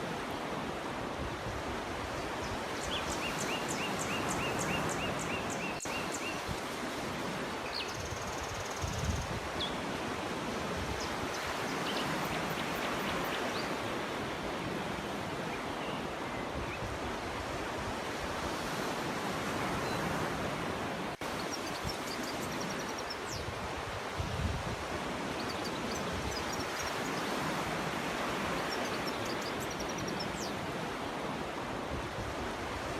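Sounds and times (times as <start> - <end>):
faint bird chirps: 28.4 - 30.6.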